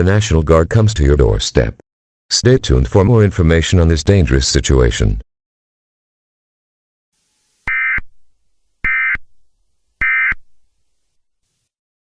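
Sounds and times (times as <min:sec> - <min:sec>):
buzzy digital data bursts: 0:07.2 - 0:08.1.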